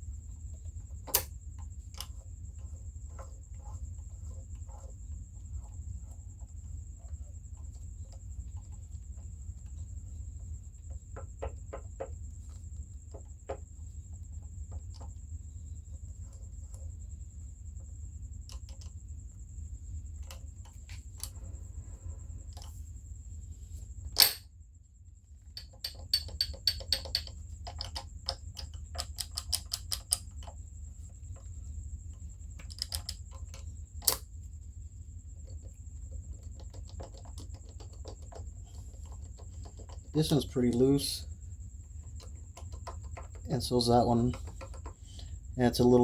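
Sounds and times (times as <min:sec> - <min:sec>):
steady low hum: 0:00.0 - 0:46.0
metal parts clicking and rattling: 0:24.2 - 0:24.4, 0:25.6 - 0:30.5, 0:32.6 - 0:33.2.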